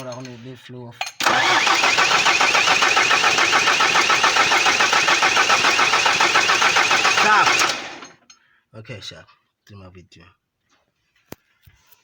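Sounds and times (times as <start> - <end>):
starter motor cranking: 1.2 - 8.2.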